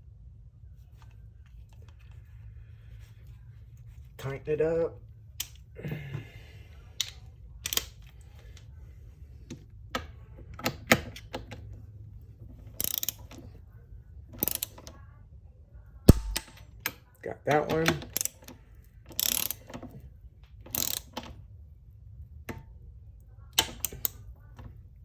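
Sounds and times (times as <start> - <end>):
torque wrench ratcheting: 12.8 - 13.3, 14.4 - 14.8, 18.2 - 18.4, 19.1 - 19.7, 20.7 - 21.2
torque wrench sharp click: 16.1 - 16.5.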